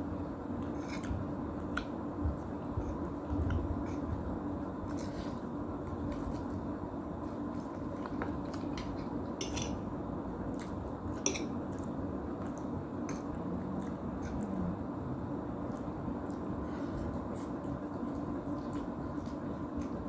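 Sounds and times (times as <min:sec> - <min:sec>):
steady low hum: 0:00.0 - 0:20.0
person chewing noodles: 0:15.6 - 0:20.0.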